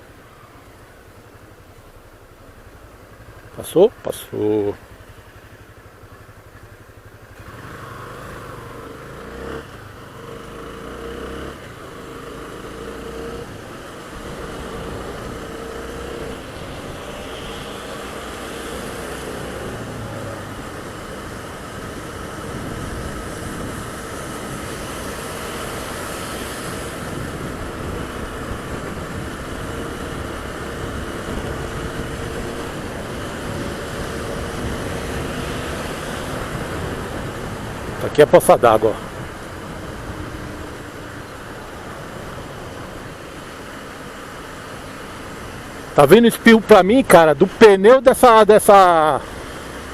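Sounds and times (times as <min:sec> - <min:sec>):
motorcycle engine: 0:00.4 - 0:46.0
steady rushing noise: 0:13.4 - 0:49.9.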